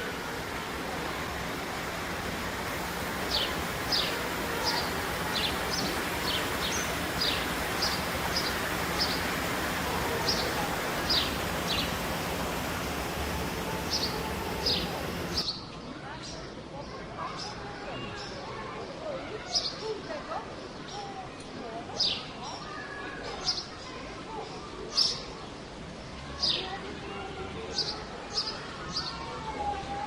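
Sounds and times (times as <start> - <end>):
bird chirping: 3.2 - 15.4.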